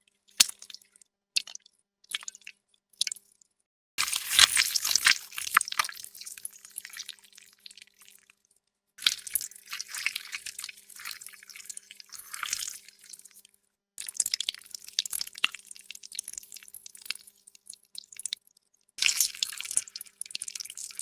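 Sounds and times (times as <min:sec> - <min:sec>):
wet liquid splattering: 0:04.0 - 0:05.9.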